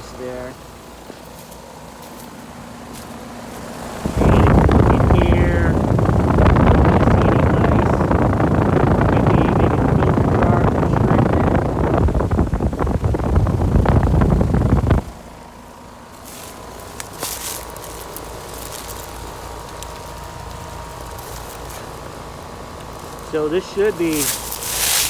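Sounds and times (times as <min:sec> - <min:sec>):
wind buffeting microphone: 0:03.9 - 0:15.3.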